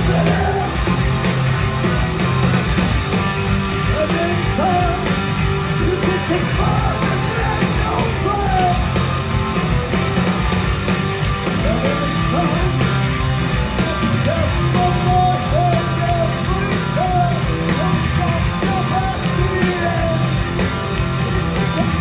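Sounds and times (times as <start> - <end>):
singer shouting vocals: 0.0 - 0.9, 3.9 - 5.1, 5.8 - 9.0, 11.6 - 12.9, 13.6 - 20.4
live rock band playing loud: 0.0 - 22.0.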